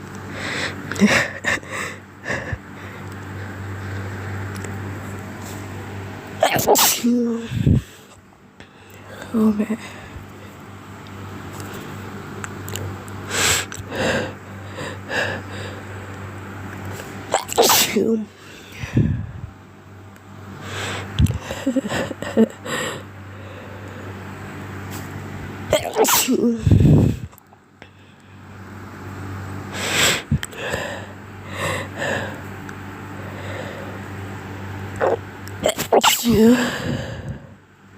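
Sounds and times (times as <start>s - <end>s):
low steady hum: 0.0s - 37.9s
person sneezing: 6.4s - 7.6s, 17.3s - 18.1s, 25.7s - 27.1s, 35.0s - 37.2s
person sniffling: 35.6s - 37.5s.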